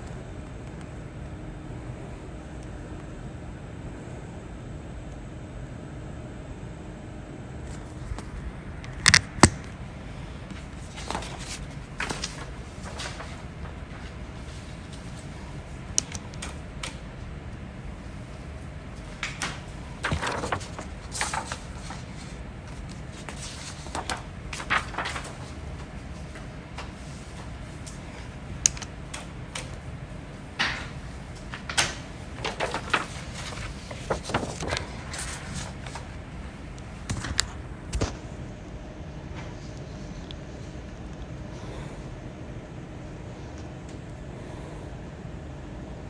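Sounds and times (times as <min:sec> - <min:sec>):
low background noise: 0:00.0 - 0:46.0.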